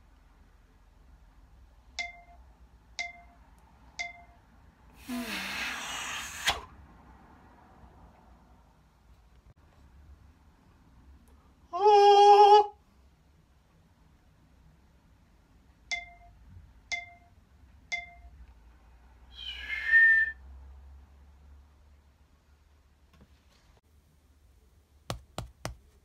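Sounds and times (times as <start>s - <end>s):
sharp ticks with ringing tone: 2.0s - 4.5s, 15.9s - 18.5s.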